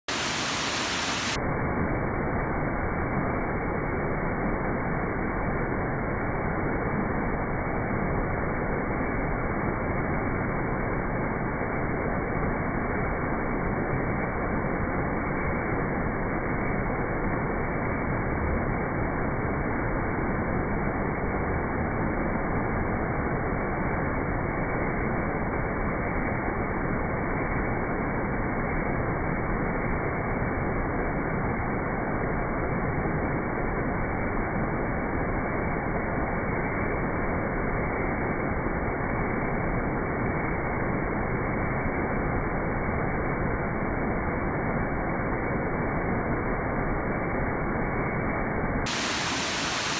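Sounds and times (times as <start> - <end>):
waterfall splashing: 0.0 - 1.4, 48.9 - 49.9.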